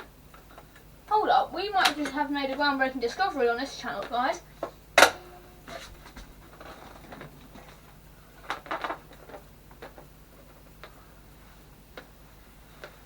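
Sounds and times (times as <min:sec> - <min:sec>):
hands handling computer parts: 0:04.0 - 0:13.0.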